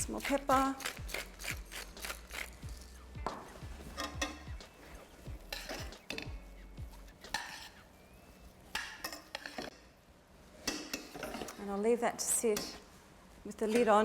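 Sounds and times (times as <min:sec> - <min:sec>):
spoon scraping and clinking pot: 0:03.9 - 0:04.6, 0:05.5 - 0:06.4, 0:07.2 - 0:07.8, 0:08.7 - 0:09.9, 0:10.6 - 0:11.6.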